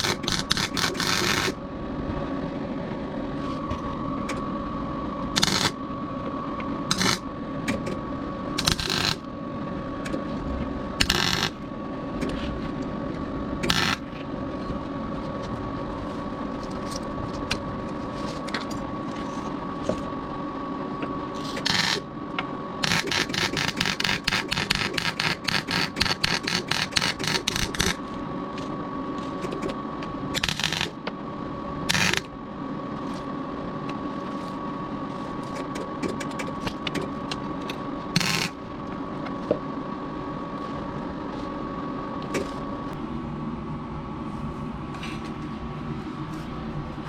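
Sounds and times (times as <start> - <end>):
loud tool bursts: 0.0 - 1.6, 5.4 - 5.8, 6.9 - 7.2, 8.6 - 9.2, 11.0 - 11.6, 13.6 - 14.0, 21.6 - 22.0, 22.8 - 28.0, 38.2 - 38.6.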